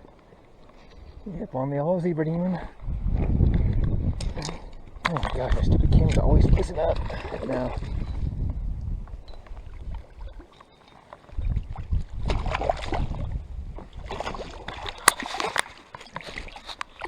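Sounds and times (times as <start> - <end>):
wind rumble on microphone: 2.8 - 7.0, 7.8 - 10.0
sharp clicks: 15.1 - 15.7.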